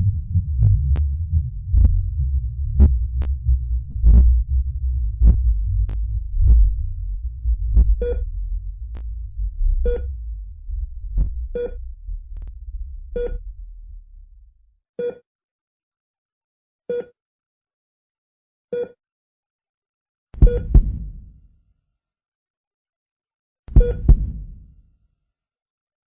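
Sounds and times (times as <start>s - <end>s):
low throbbing heartbeat: 0.0s - 14.7s, 20.4s - 21.3s, 23.8s - 24.6s
heart monitor beeps: 7.8s - 8.3s, 9.8s - 10.1s, 11.5s - 11.8s, 13.1s - 13.4s, 20.4s - 20.8s, 23.8s - 24.1s.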